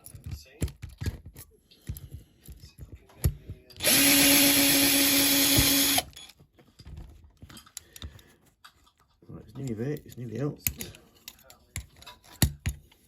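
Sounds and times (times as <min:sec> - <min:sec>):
handling clicks and knocks: 0:00.0 - 0:03.8
small power drill running: 0:03.8 - 0:06.1.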